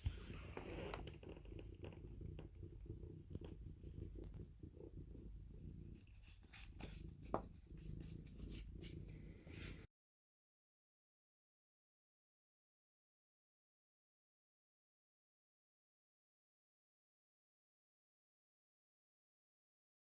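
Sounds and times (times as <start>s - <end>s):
cat purring: 0.0s - 9.9s.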